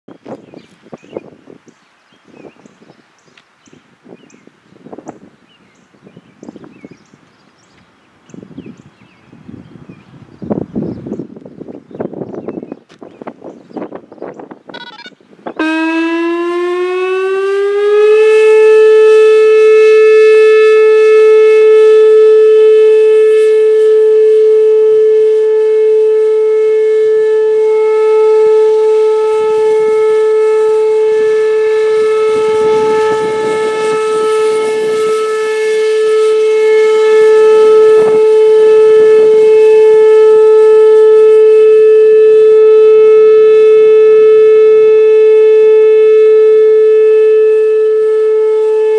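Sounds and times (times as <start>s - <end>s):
electronic warning siren: 14.6s - 48.9s.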